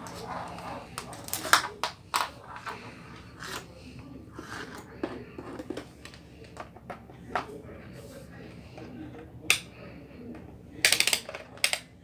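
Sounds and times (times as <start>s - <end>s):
handling clicks and taps: 10.4s - 11.9s.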